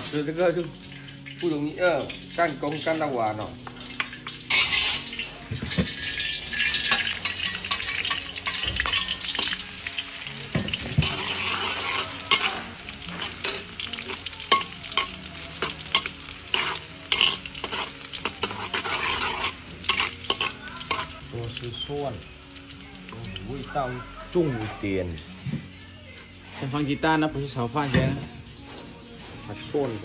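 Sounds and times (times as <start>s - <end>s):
food sizzling in a pan: 0.0s - 30.0s
metal spatula scraping pan: 3.6s - 21.3s.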